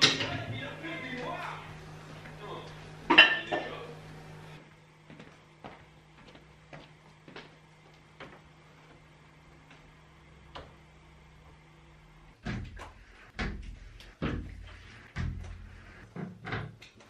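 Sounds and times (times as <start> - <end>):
low steady hum: 0.0 - 17.0
heavy knocks and thuds: 12.4 - 16.7.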